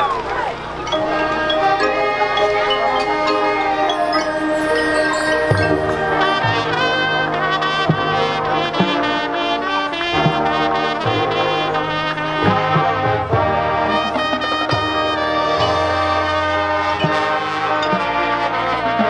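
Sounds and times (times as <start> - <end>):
loud brass chords: 0.0 - 19.0
low held brass notes: 0.0 - 19.0
marching band playing: 0.0 - 19.0
drum hits: 5.5 - 9.3, 10.1 - 11.7, 12.3 - 18.2.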